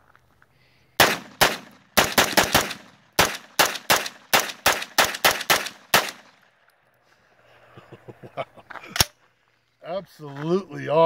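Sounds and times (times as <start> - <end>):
pistol gunshots: 1.0 - 6.4.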